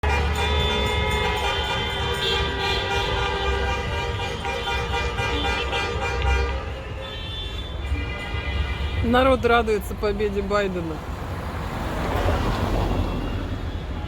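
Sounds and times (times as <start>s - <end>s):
car horns honking: 0.0s - 9.3s
traffic rumble: 0.0s - 14.0s.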